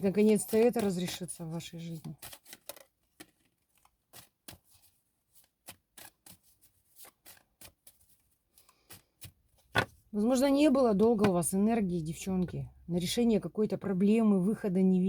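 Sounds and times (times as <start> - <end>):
cards snapping and rustling: 2.0 - 9.9.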